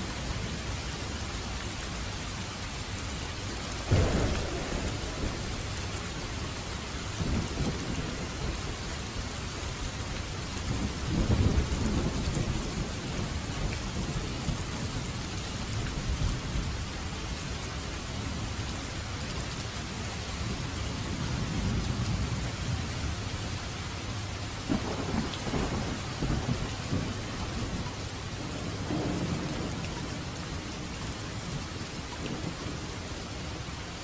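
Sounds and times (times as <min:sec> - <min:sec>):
heavy rain: 0:00.0 - 0:34.0
thunder rumbling: 0:03.9 - 0:09.9, 0:10.6 - 0:16.9, 0:24.1 - 0:33.6.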